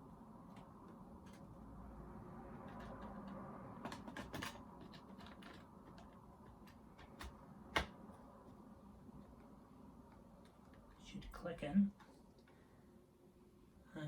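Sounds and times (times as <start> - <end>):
computer parts clicking and knocking: 2.6 - 8.0.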